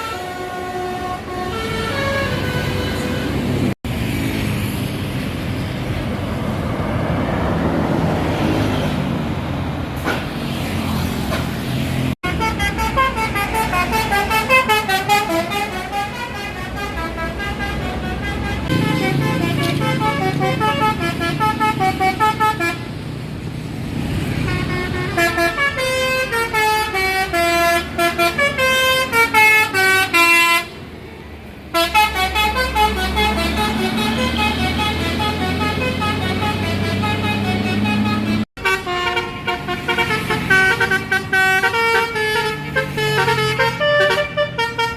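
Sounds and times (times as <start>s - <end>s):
multi-tone air horn playing a tune: 0.0s - 3.5s, 12.2s - 22.9s, 24.5s - 30.7s, 31.7s - 44.9s
bus engine running: 0.0s - 44.9s
traffic noise: 0.0s - 44.9s.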